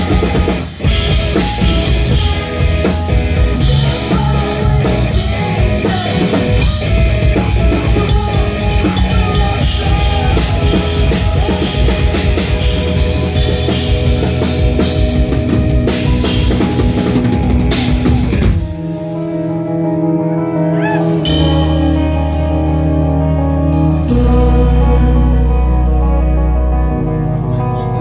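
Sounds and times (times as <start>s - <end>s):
drum kit: 0.0s - 19.3s, 20.9s - 23.0s
electric guitar chords: 0.0s - 28.0s
rock band playing live: 0.0s - 28.0s.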